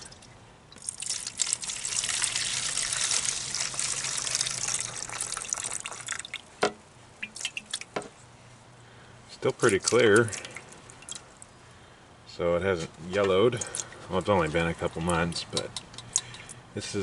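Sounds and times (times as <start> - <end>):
liquid pouring into a jar: 0.0 - 6.5, 9.6 - 11.5.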